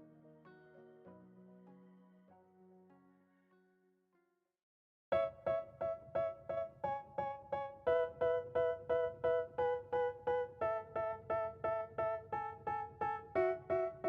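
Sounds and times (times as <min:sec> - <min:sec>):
keyboard repeated notes: 0:05.2 - 0:14.0.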